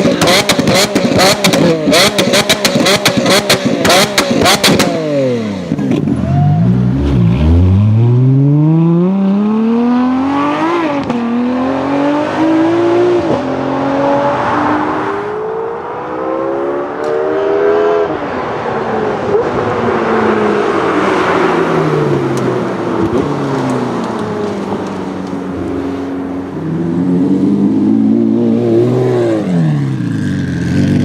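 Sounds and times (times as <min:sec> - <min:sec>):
exhaust pops and crackles: 0:00.0 - 0:05.0, 0:22.3 - 0:25.7
car engine accelerating through gears: 0:00.0 - 0:31.0.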